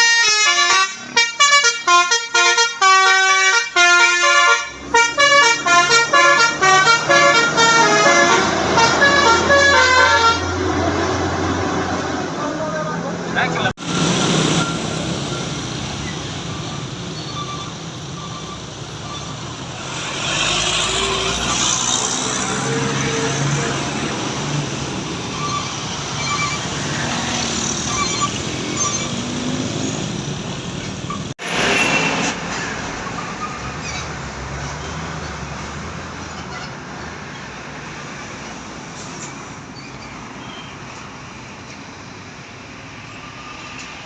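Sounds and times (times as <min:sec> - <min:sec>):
roadside traffic noise: 0:00.0 - 0:44.0
heavy vehicle passing: 0:04.6 - 0:39.2.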